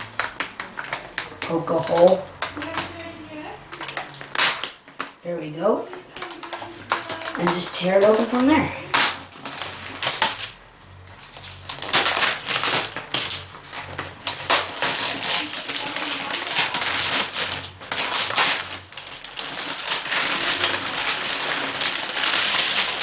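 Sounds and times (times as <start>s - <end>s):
packaging torn and crinkled: 3.8s - 5.1s, 6.2s - 10.6s, 11.2s - 23.0s.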